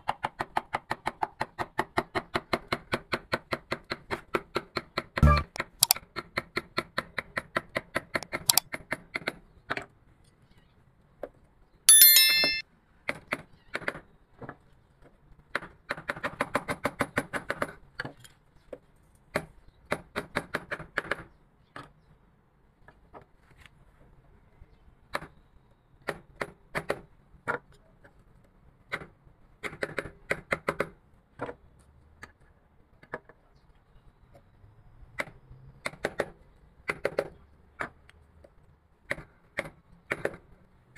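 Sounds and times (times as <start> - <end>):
brief metallic ring: 11.9 - 12.6.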